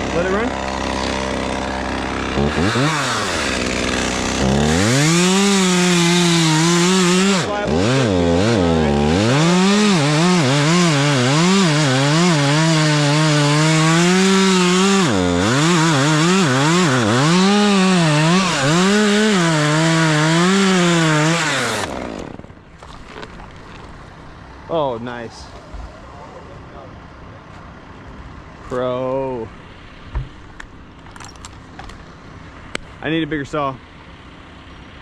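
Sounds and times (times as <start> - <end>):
chainsaw cutting wood: 0.0 - 24.0.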